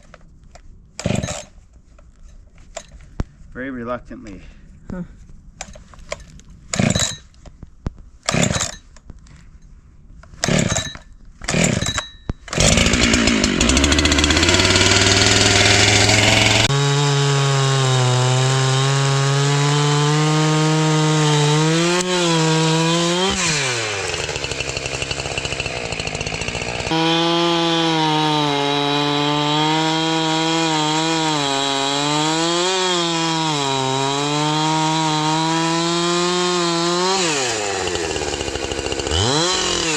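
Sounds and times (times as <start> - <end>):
chainsaw cutting wood: 1.0 - 1.5, 6.7 - 7.2, 8.2 - 8.8, 10.3 - 39.9.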